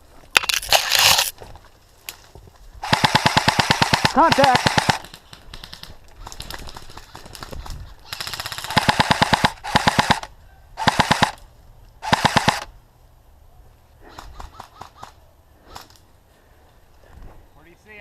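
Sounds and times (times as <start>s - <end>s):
distant shots: 2.8s - 5.9s, 8.2s - 11.4s, 12.0s - 12.7s
airsoft rifle firing bursts: 2.8s - 11.4s, 12.0s - 12.7s.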